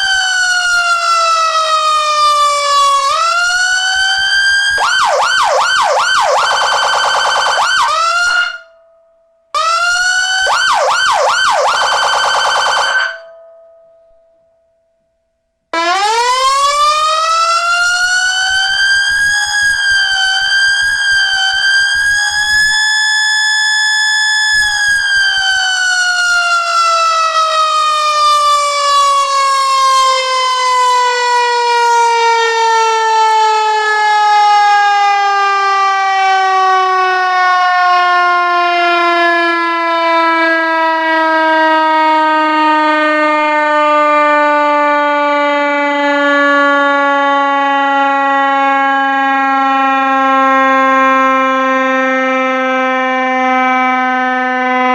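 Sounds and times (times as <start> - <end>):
electronic siren wailing: 0.0 - 8.8, 9.6 - 13.4, 15.8 - 54.9.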